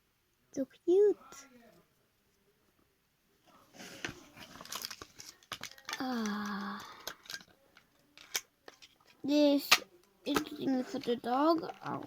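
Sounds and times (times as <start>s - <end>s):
plastic packaging crinkling: 4.4s - 7.4s
plastic pieces clicking: 4.6s - 9.0s.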